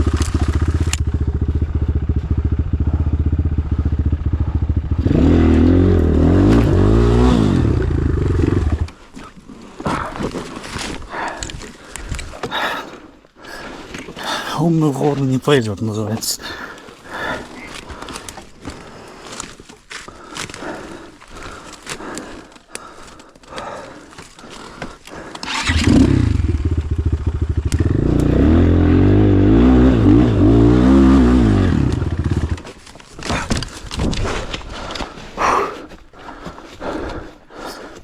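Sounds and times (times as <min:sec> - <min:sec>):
motorcycle engine revving: 0:00.0 - 0:09.0, 0:25.4 - 0:33.8.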